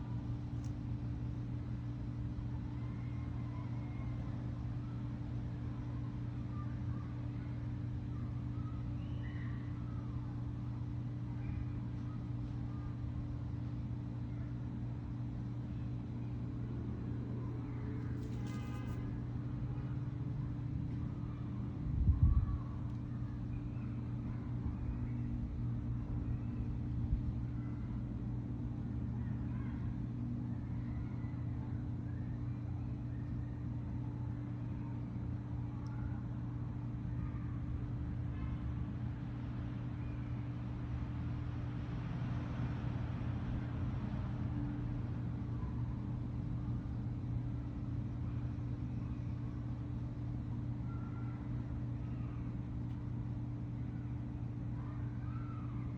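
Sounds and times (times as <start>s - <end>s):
city traffic drone: 33.6s - 55.2s.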